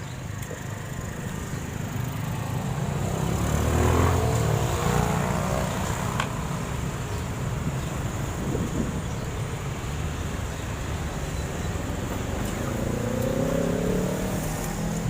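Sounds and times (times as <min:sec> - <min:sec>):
motor vehicle passing by: 0:01.2 - 0:06.6, 0:12.0 - 0:15.0.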